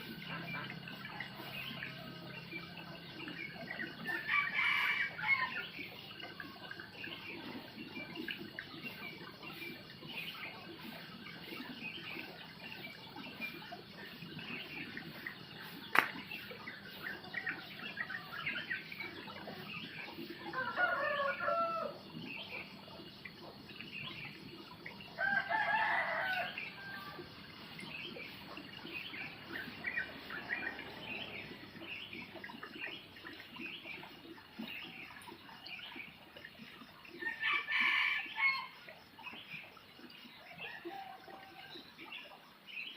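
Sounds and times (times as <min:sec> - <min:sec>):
small birds chirping: 0:27.2 - 0:37.2.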